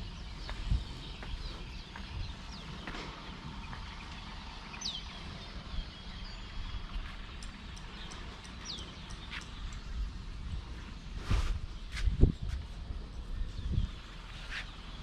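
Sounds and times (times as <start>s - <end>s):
bird chirps: 0.0s - 10.2s
steady low rumble: 0.0s - 15.0s.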